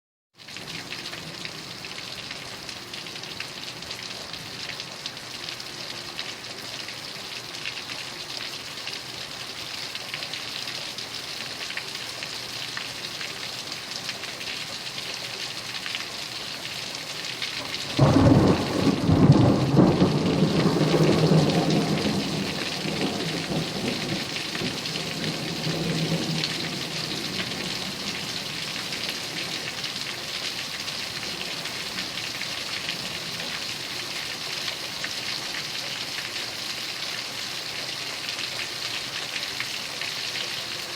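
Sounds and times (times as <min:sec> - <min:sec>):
heavy rain pouring: 0:00.4 - 0:40.9
thunderclap rumbling: 0:17.9 - 0:29.7.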